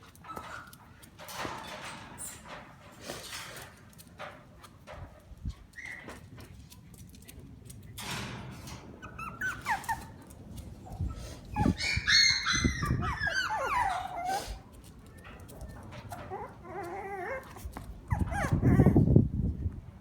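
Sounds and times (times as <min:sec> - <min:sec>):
puppies whining and yelping: 0:05.7 - 0:06.2, 0:09.0 - 0:19.1
faint taps and scuffling: 0:13.8 - 0:18.6.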